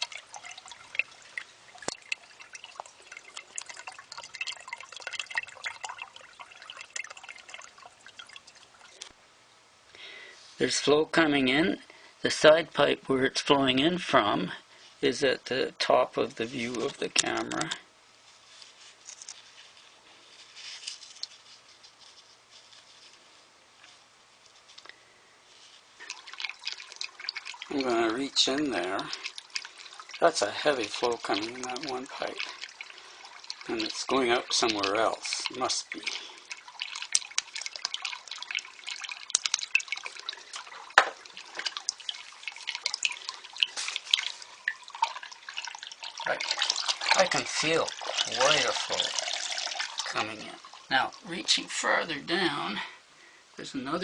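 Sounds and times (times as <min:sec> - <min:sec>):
water drips and patters: 0:00.0 - 0:09.2, 0:15.4 - 0:17.8, 0:20.5 - 0:22.9, 0:25.5 - 0:52.8
water flowing into drain pipe: 0:00.0 - 0:09.2, 0:15.1 - 0:17.8, 0:25.6 - 0:52.8.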